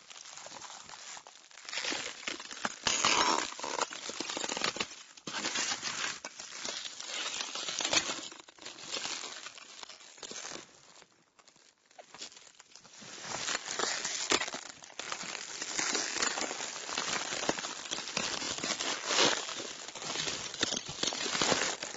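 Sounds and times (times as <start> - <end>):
broken glass crunching: 13.5 - 21.9.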